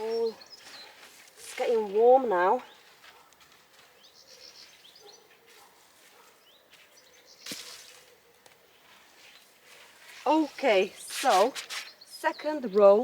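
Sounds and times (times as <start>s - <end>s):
faint bird chirps: 3.9s - 8.4s
brief rustling scrape: 9.2s - 12.0s.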